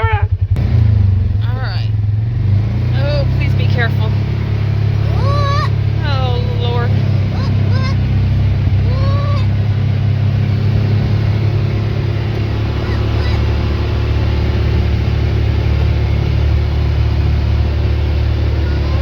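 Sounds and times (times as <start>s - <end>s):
vehicle engine and road noise: 0.0s - 19.0s
high rising and falling whine: 3.9s - 19.0s.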